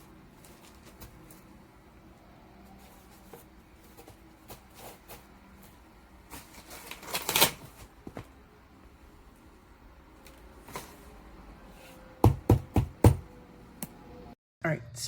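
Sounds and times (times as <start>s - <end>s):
rustling and clattering: 0.0s - 1.7s.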